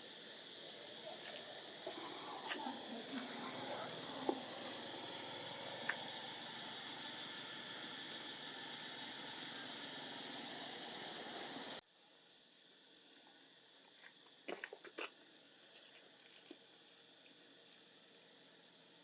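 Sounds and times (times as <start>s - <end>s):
background hiss: 0.0s - 19.0s.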